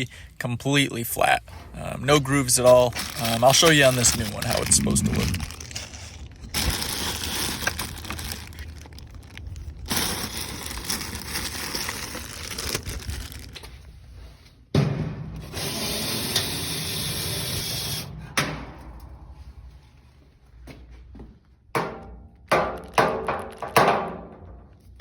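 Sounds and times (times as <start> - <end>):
metal parts scraping and rattling: 1.5 - 13.5.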